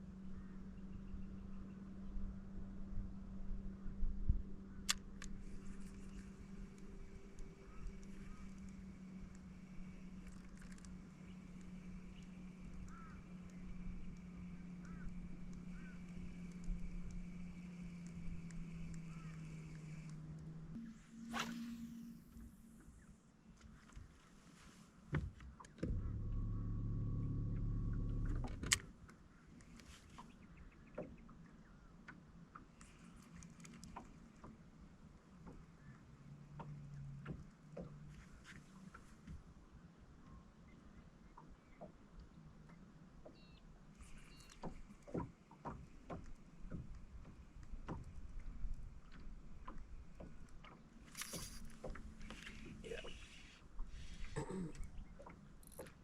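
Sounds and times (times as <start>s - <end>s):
water lapping at hull: 2.4s - 56.0s
faint ticks: 4.8s - 20.8s, 27.6s - 39.4s, 41.3s - 56.0s
motor humming: 25.8s - 28.7s.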